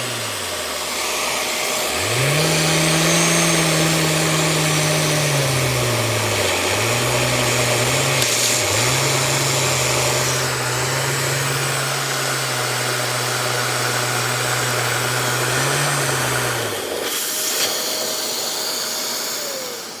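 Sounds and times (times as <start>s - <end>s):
vacuum cleaner running: 0.0s - 20.0s.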